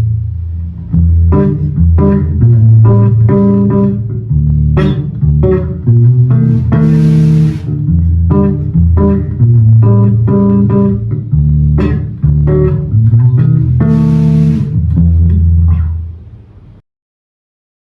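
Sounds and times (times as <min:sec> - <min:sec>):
electric bass plucked notes: 0:00.0 - 0:16.3
bright hissy bursts: 0:06.4 - 0:07.8, 0:13.8 - 0:14.8.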